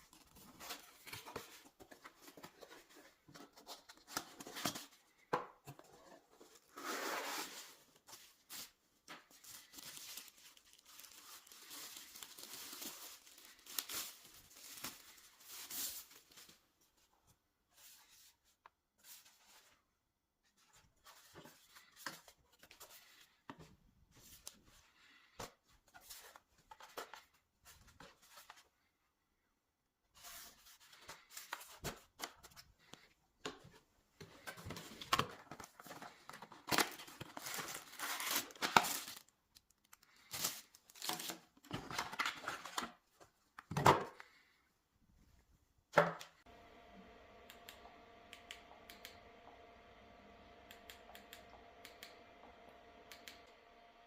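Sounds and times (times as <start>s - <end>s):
wrapping tearing and crinkling: 9.3s - 16.4s, 35.7s - 42.8s
steady hum with held tones: 46.5s - 54.0s.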